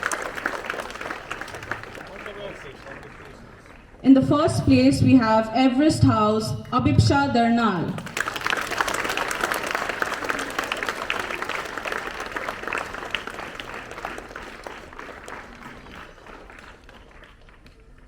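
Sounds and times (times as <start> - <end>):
audience applauding: 0.0 - 4.0, 8.0 - 18.0.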